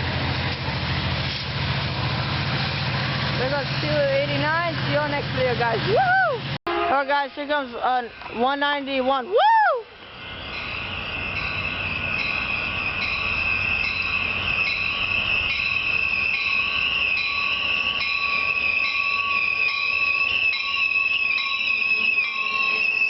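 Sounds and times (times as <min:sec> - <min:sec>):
train rolling rumble: 0:00.0 - 0:23.0
train wheel squeal: 0:10.0 - 0:23.0.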